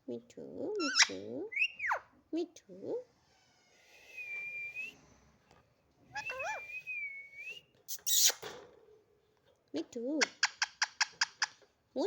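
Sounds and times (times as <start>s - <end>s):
parrot whistling: 6.1s - 7.2s.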